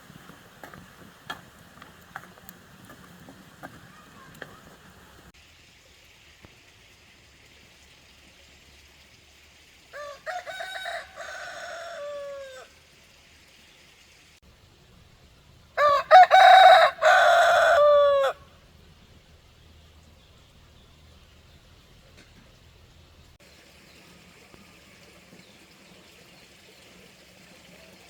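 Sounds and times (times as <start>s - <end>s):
rooster crowing: 9.9s - 12.7s, 15.8s - 18.5s.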